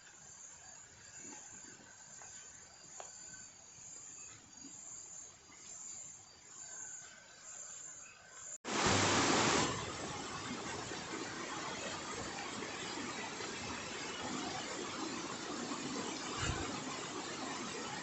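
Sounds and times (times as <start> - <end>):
loud steady rushing noise: 8.7 - 18.0.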